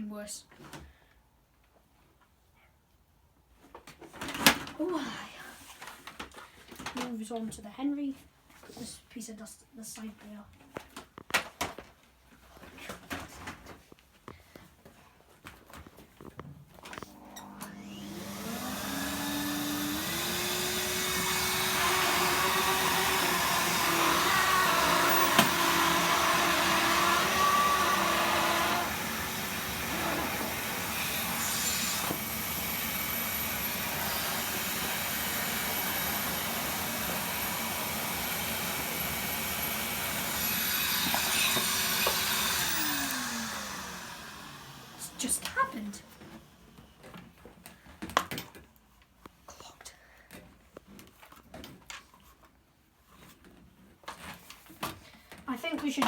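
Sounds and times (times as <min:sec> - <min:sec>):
vacuum cleaner motor running: 0:16.9 - 0:47.3
rushing suction noise: 0:17.7 - 0:45.2.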